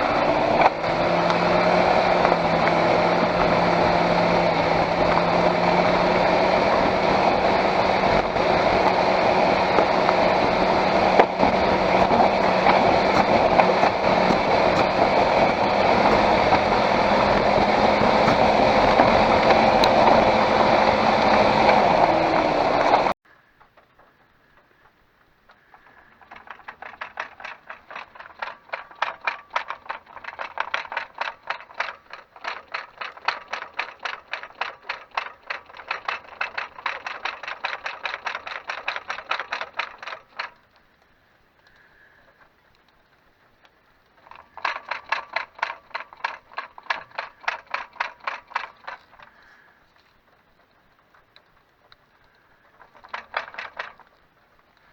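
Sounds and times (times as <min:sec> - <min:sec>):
fast rattling clicks: 0:00.0 - 0:23.1, 0:25.7 - 0:41.0, 0:44.0 - 0:54.9
vehicle running noise: 0:00.0 - 0:23.2.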